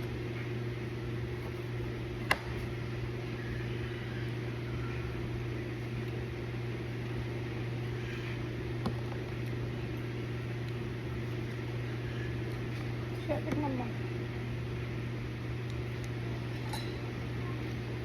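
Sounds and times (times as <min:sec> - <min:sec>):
low machine hum: 0:00.0 - 0:18.0.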